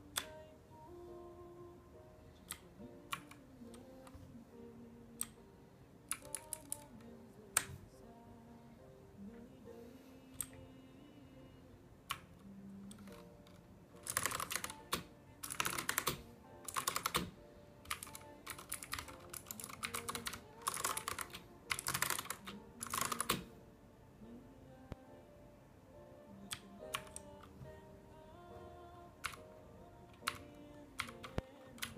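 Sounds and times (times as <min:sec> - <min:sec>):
faint music: 0:00.0 - 0:31.9
mechanical keyboard typing: 0:02.5 - 0:04.2, 0:06.1 - 0:07.8, 0:12.9 - 0:23.5, 0:26.5 - 0:27.6, 0:29.2 - 0:29.4, 0:30.1 - 0:31.9.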